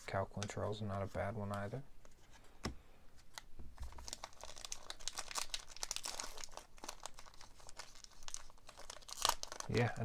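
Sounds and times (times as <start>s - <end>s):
foil wrapper crinkling and tearing: 3.8s - 10.0s.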